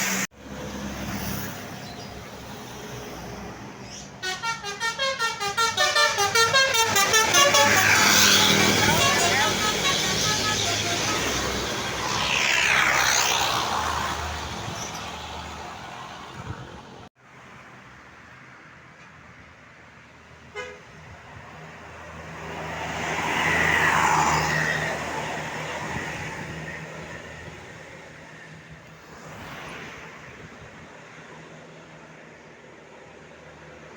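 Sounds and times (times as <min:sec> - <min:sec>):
bus engine noise: 0:00.0 - 0:33.9
multi-tone bus horns: 0:04.2 - 0:12.0, 0:20.5 - 0:21.0.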